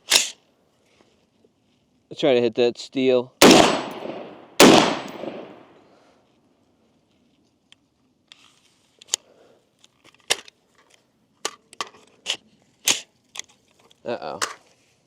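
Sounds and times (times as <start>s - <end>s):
rifle shot echo: 3.4s - 5.8s.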